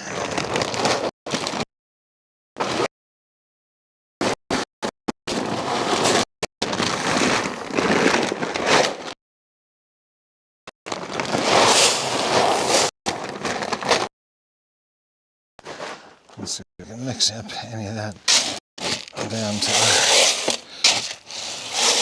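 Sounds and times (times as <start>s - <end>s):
grain feed pouring: 11.1s - 14.0s, 18.2s - 22.0s
grain feed rattling: 11.2s - 14.0s, 18.2s - 22.0s.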